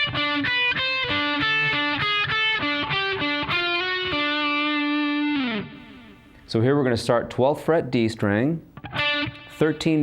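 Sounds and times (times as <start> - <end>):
electric guitar lead phrase: 0.0 - 6.5, 8.8 - 10.0.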